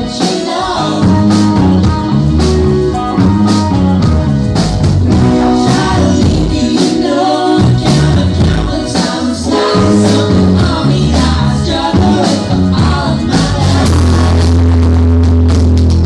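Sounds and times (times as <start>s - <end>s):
person singing: 0.0s - 2.1s, 5.3s - 14.6s
bass guitar: 0.0s - 16.0s
guitar: 0.0s - 16.0s
drum beat: 0.2s - 16.0s.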